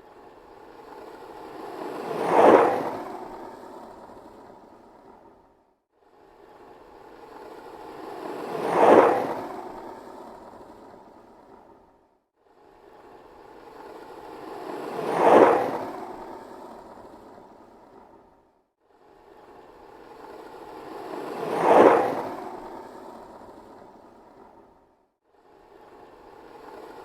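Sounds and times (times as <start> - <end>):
skateboard wheels rolling on pavement: 1.5 - 3.1, 8.3 - 9.5, 21.0 - 22.4.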